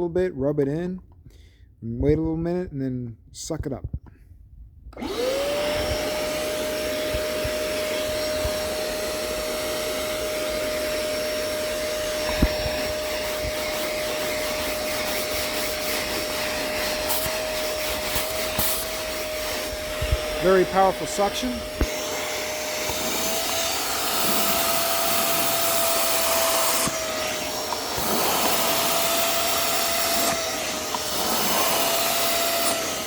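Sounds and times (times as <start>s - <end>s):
spot cleaner suction motor whine: 5.0s - 33.0s.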